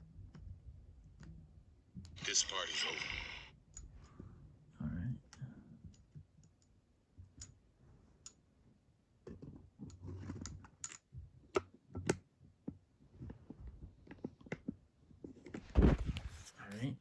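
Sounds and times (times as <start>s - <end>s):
small parts clicking and knocking: 9.2s - 12.8s
rustling: 15.6s - 16.8s.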